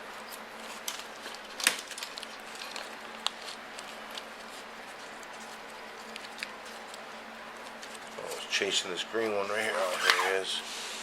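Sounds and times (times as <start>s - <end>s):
wiring harness and tools clicking: 0.3s - 7.0s.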